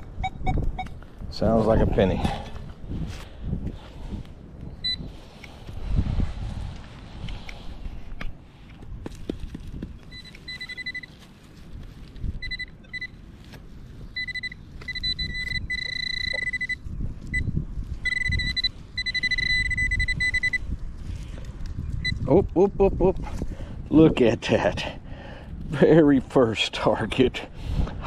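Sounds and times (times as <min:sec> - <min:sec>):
metal detector high tone: 0:10.1 - 0:11.2, 0:12.4 - 0:13.2, 0:14.1 - 0:20.7.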